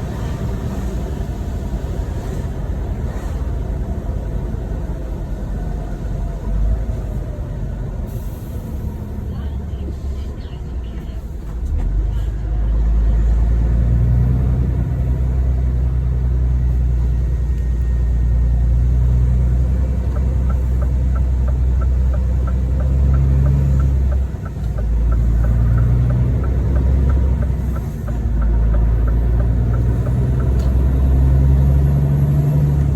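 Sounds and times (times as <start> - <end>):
diesel truck engine running: 0.0 - 32.9
faint regular ticking: 20.1 - 31.0.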